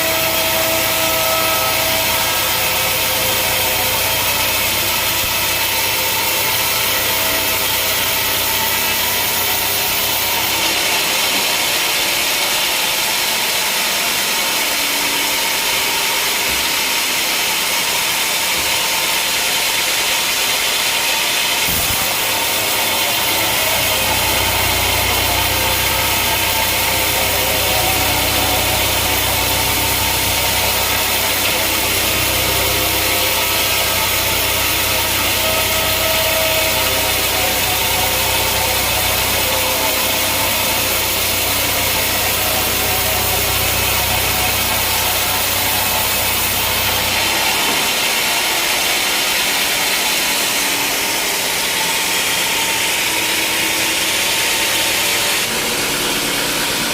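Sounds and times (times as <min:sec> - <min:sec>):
sawmill machinery sawing: 0:00.0 - 0:56.9
deep hum: 0:21.6 - 0:49.4.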